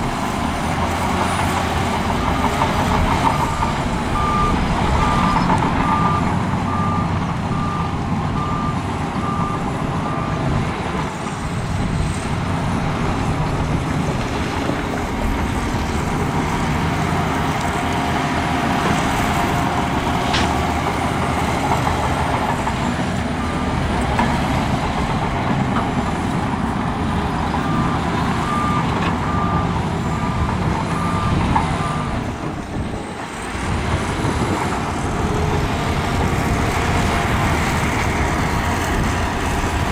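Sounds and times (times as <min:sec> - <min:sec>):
diesel earthmoving machines: 0:00.0 - 0:39.9
reversing alarm beeping: 0:01.9 - 0:10.5, 0:27.5 - 0:32.3.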